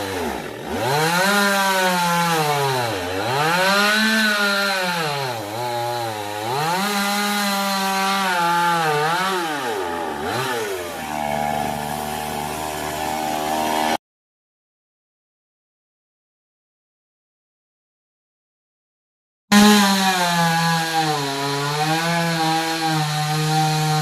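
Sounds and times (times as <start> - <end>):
chainsaw cutting wood: 0.0 - 14.0, 19.5 - 24.0.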